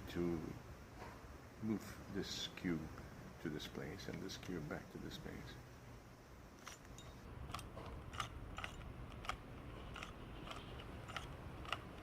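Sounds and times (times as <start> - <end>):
puzzle cube clicking: 7.5 - 12.0.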